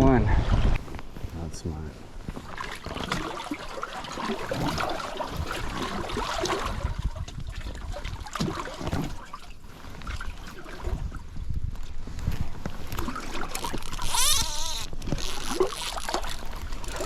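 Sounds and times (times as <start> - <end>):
river water splashing: 2.4 - 11.0, 12.7 - 17.0.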